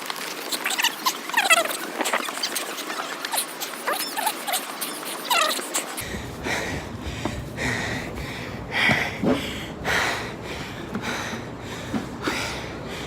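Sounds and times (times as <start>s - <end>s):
man breathing hard: 5.9s - 13.0s.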